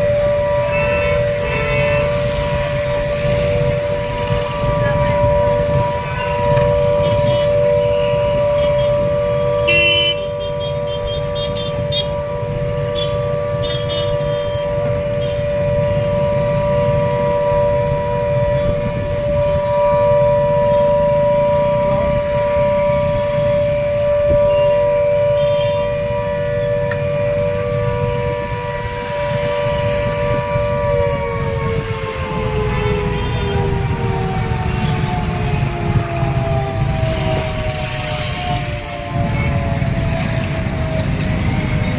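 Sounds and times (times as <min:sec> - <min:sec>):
air-raid siren two-tone: 0:00.0 - 0:41.9.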